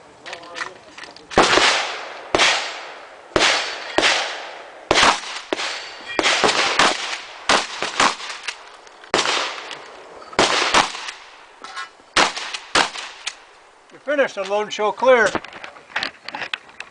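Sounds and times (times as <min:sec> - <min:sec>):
shotgun shots echoing: 0:01.3 - 0:09.8, 0:10.4 - 0:11.4, 0:12.2 - 0:13.5.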